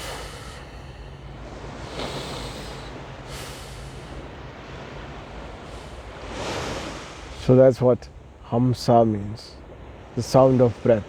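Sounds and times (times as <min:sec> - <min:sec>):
man breathing through the nose: 0:00.0 - 0:04.4
steady low rumble: 0:00.0 - 0:11.0.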